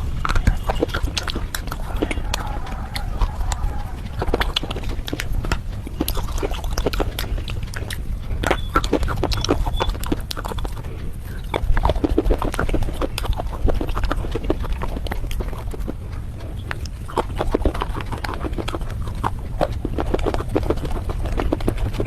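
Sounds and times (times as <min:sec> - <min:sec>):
low rumble: 0:00.0 - 0:17.1
crunchy chewing: 0:00.0 - 0:22.0.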